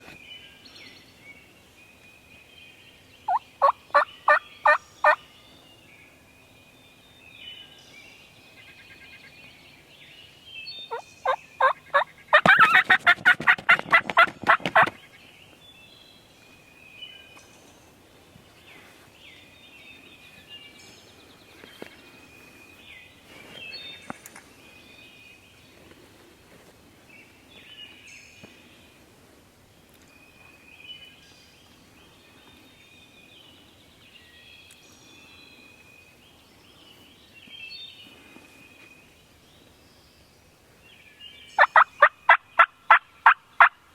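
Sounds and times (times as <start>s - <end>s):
faint songbirds chirping: 0.0s - 12.9s, 13.8s - 43.9s
turkey gobbling: 3.3s - 5.2s, 11.6s - 14.9s, 41.6s - 43.7s
turkey yelping: 3.3s - 5.2s, 11.6s - 14.9s, 41.6s - 43.7s.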